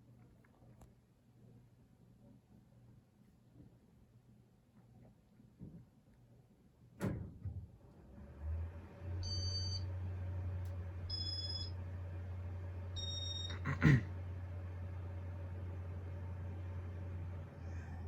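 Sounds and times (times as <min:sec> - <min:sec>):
ceiling fan motor humming: 0:07.9 - 0:18.0
short high electronic beeps: 0:13.0 - 0:13.6.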